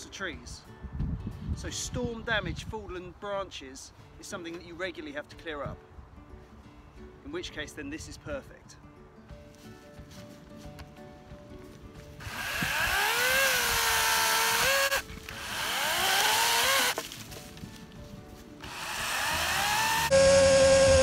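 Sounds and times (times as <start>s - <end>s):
battery chainsaw motor whining: 12.2s - 17.0s, 18.6s - 21.0s.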